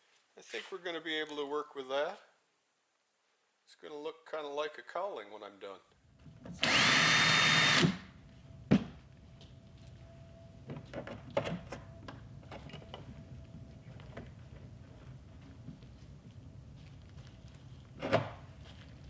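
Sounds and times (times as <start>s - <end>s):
power drill running: 6.6s - 8.1s.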